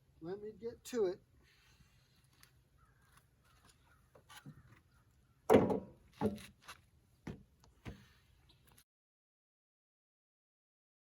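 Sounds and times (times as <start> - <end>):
knocks and clunks: 5.5 - 6.4.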